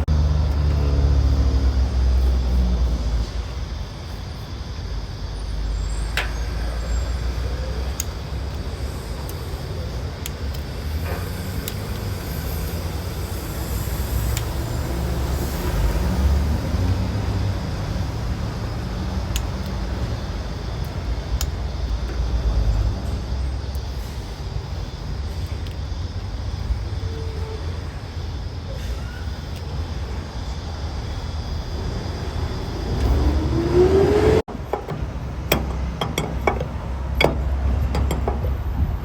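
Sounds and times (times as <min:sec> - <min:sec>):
vehicle engine rumbling: 0:00.0 - 0:39.0.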